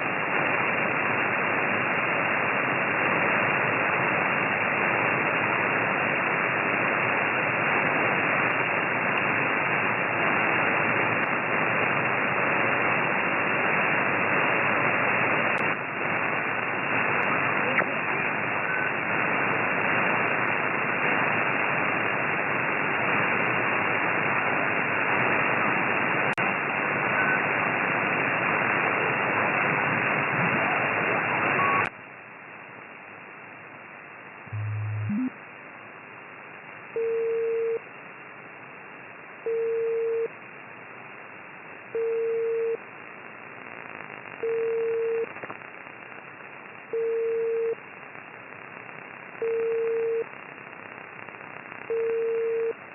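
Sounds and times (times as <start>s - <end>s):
radio interference noise: 0.0s - 31.9s, 34.5s - 35.5s, 38.4s - 52.9s
radio hiss: 0.0s - 52.9s
tone beeping: 34.5s - 35.3s
low rising tone: 34.5s - 35.4s.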